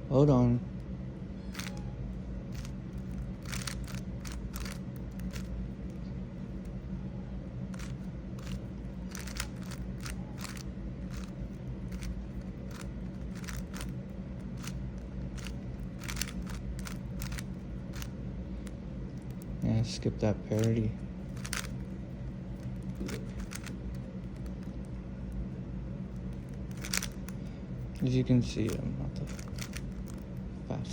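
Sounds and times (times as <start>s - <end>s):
steady low hum: 0.0s - 30.9s
puzzle cube clicking: 1.6s - 1.8s, 2.5s - 5.5s, 7.8s - 14.8s, 15.4s - 18.1s, 21.3s - 21.9s, 22.6s - 24.8s, 26.3s - 27.3s, 28.7s - 30.3s.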